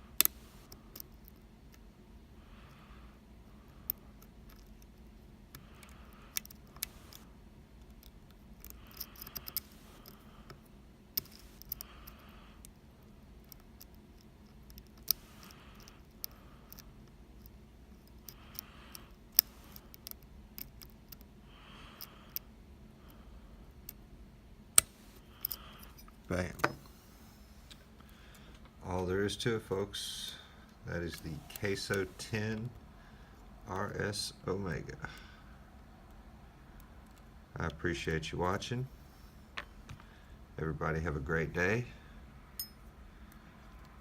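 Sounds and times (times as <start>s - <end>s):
lock picks clicking in lock: 5.6s - 10.6s, 11.2s - 12.2s, 13.4s - 21.3s
soft scraping: 30.9s - 32.8s.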